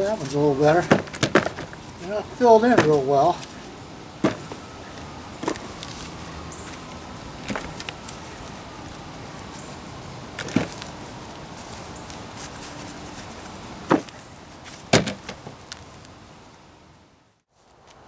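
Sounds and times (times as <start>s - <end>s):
knocks and clicks digging in soil: 10.4s - 11.0s.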